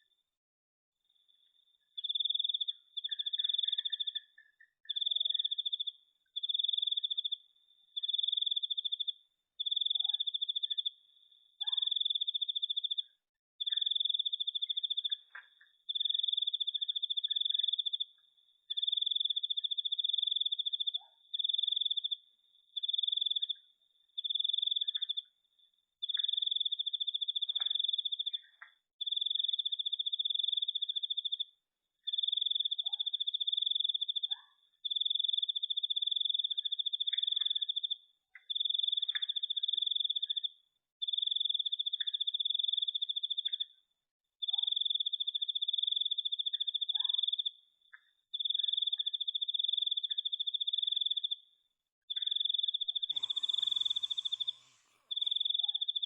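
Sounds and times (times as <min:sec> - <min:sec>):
cricket trilling: 0:52.1 - 0:56.0
faint short chirps: 0:53.1 - 0:55.8.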